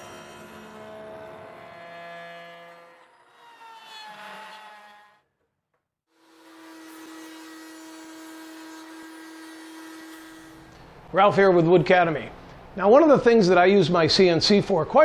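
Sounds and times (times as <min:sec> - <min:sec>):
router spindle whining: 0:00.0 - 0:05.2.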